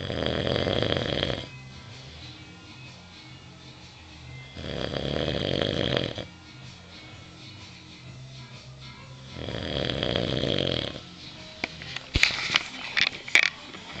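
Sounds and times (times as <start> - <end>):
man snoring: 0.0 - 2.4, 4.4 - 7.2, 9.1 - 11.2
short snorts: 9.3 - 11.0.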